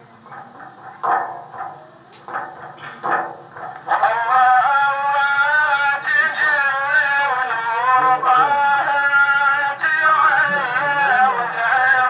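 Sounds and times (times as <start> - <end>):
man chanting praise song: 3.7 - 12.0.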